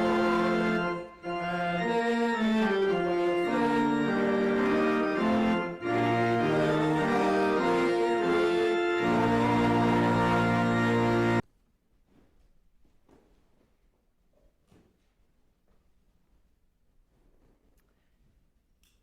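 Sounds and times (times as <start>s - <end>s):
organ playing held chords: 0.0s - 11.4s.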